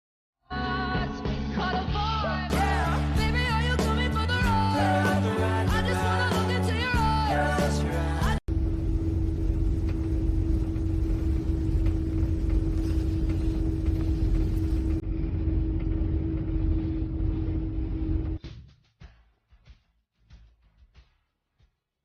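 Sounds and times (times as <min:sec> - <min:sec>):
motor rumbling: 0:08.5 - 0:18.4.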